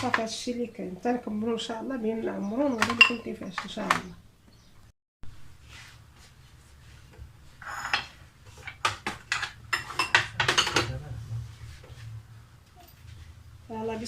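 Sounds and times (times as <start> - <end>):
dishes and utensils clinking: 2.7 - 3.4, 7.6 - 11.0.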